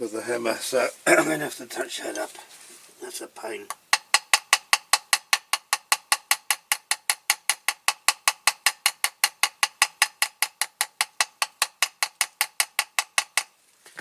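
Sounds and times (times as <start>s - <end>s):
small hammer tapping metal axle: 3.7s - 13.6s.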